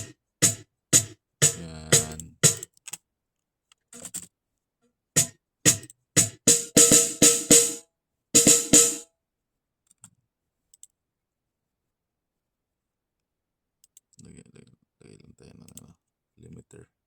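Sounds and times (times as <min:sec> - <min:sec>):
snare drum hits: 0:00.0 - 0:02.6, 0:05.2 - 0:07.8, 0:08.4 - 0:09.0.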